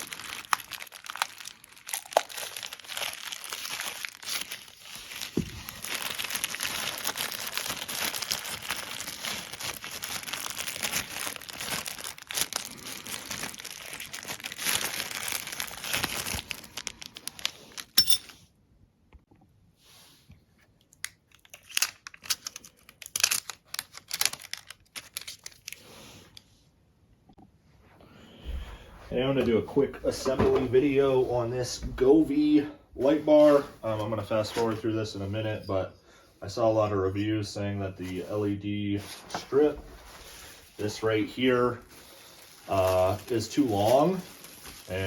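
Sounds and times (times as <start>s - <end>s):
packaging crinkling and tearing: 0.0s - 18.0s, 20.9s - 26.3s, 39.5s - 45.0s.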